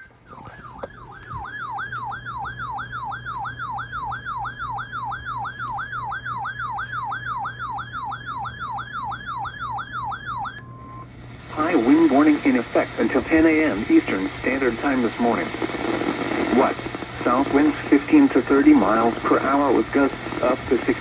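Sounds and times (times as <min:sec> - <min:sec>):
electronic alert siren sweeping: 0:00.0 - 0:11.0.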